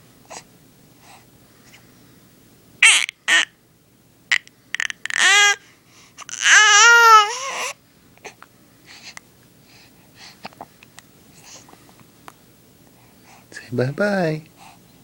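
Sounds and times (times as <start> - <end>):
baby babbling and squealing: 2.8 - 3.5, 4.8 - 5.6, 6.3 - 7.7.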